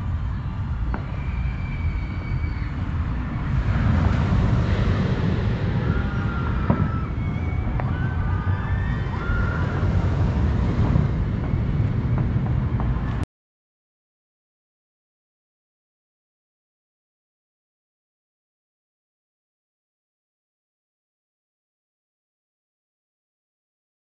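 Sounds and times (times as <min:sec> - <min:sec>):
wind rumbling on microphone: 0:00.0 - 0:13.3
faint short high whistles: 0:01.0 - 0:02.8.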